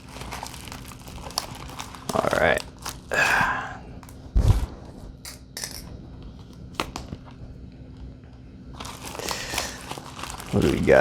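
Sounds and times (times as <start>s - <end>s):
packaging clicks and rustles: 0.0s - 3.2s, 8.8s - 11.0s.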